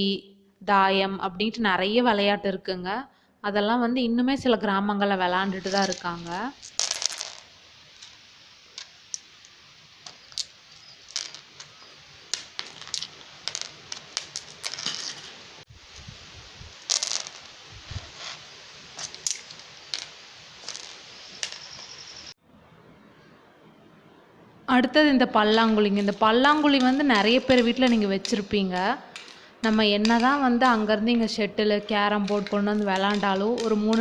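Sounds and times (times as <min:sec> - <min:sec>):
small stones clicking and clacking: 0:05.6 - 0:08.2, 0:08.8 - 0:15.3, 0:16.8 - 0:17.6, 0:19.0 - 0:21.9, 0:25.4 - 0:34.0.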